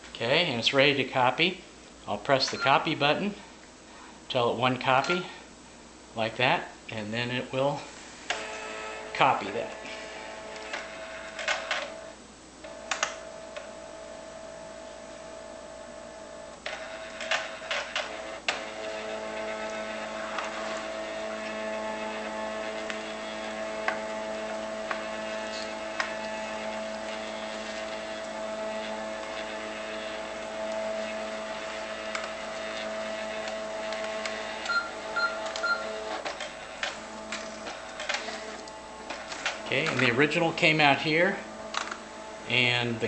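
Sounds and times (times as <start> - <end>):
fax motor whine: 7.9 - 43.0
fax machine clicks and clatter: 8.3 - 13.8, 16.6 - 42.3
short beeps: 34.7 - 35.9.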